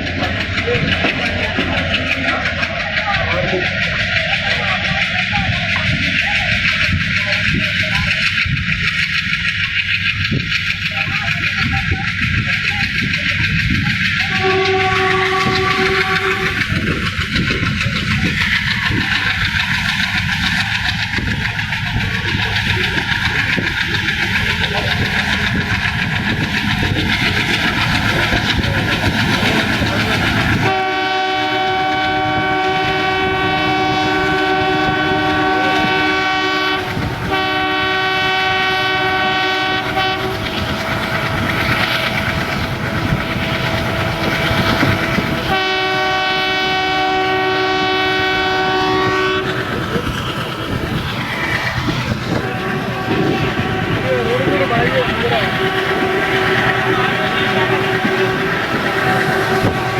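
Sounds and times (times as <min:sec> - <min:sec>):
diesel locomotive rumbling: 0:00.0 - 0:59.9
locomotive horn blasts: 0:14.3 - 0:16.7, 0:30.6 - 0:41.5, 0:45.5 - 0:49.5, 0:52.3 - 0:59.9.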